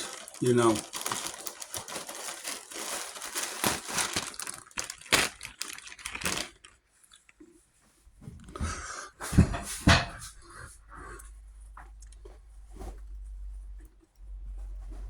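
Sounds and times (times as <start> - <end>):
plastic packaging crinkling: 0.0 - 7.3.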